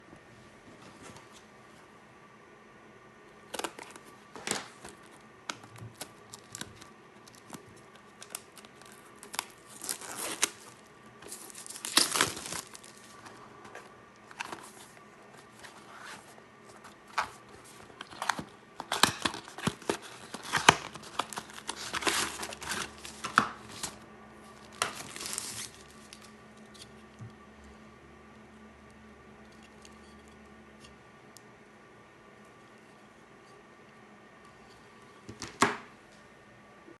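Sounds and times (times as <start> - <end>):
plastic packaging crinkling and tearing: 3.5 - 13.4, 14.2 - 26.4.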